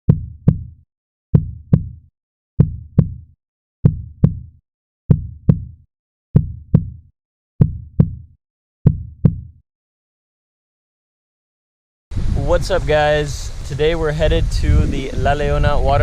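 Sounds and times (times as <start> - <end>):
heartbeat thumps: 0.1 - 5.8, 6.4 - 9.6.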